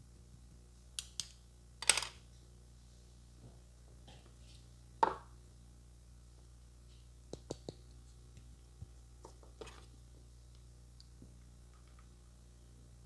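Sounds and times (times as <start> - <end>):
low steady hum: 0.0 - 13.0
faint clicks and taps: 7.3 - 9.8.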